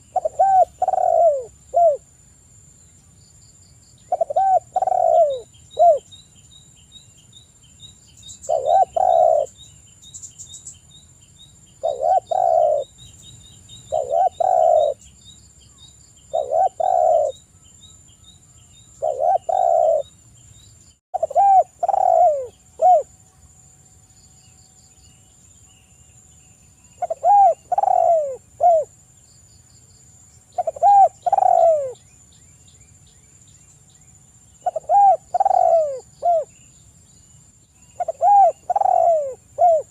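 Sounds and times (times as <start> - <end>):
dove cooing: 0.0 - 2.0, 4.1 - 6.1, 8.5 - 9.6, 11.8 - 12.9, 13.9 - 15.0, 16.3 - 17.4, 19.0 - 20.1, 21.2 - 23.1, 27.0 - 28.9, 30.6 - 32.0, 34.6 - 36.5, 38.0 - 39.9
faint high ticking chirp: 0.0 - 39.9.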